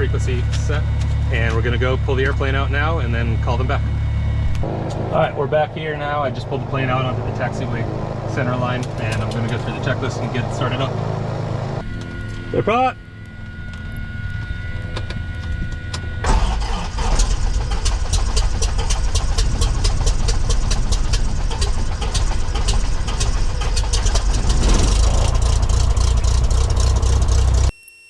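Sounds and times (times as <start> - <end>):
propeller engine running: 0.0 - 27.7
aircraft engine starter cranking: 8.4 - 11.1, 13.2 - 27.7.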